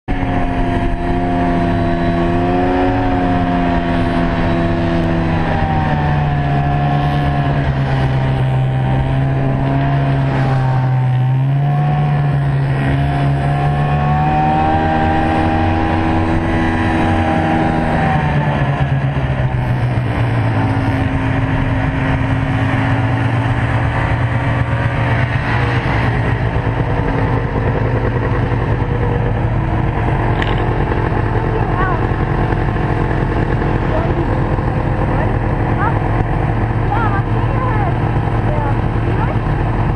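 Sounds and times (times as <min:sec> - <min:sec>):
snowmobile engine running: 0:00.0 - 0:39.9.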